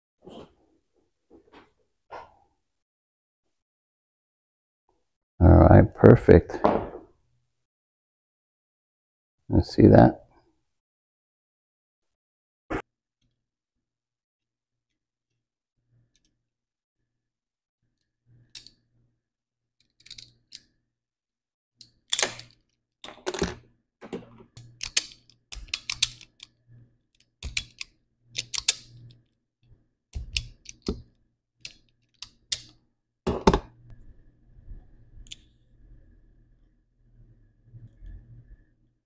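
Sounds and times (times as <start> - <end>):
tools clicking and clattering: 21.8 - 26.5.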